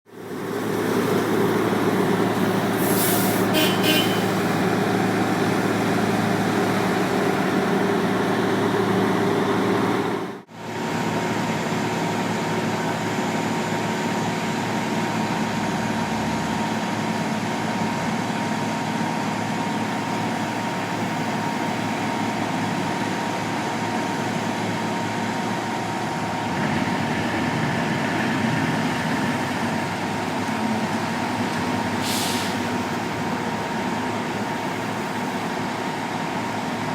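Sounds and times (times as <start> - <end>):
road construction machinery running: 0.1 - 36.9
short hiss: 2.8 - 4.4, 32.0 - 32.7.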